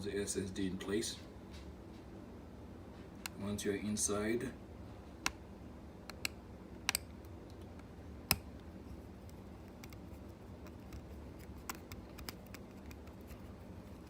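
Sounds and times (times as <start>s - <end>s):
screwdriver clicking and tapping: 10.6s - 13.1s.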